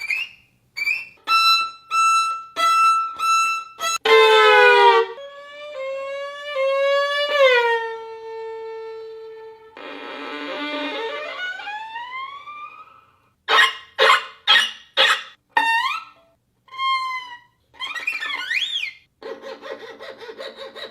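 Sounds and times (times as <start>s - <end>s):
violin sliding pitches: 0.0s - 13.3s.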